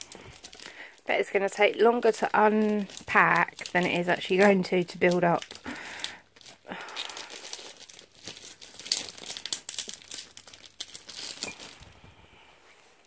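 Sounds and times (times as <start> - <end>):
plastic packaging crinkling: 0.0 - 12.9.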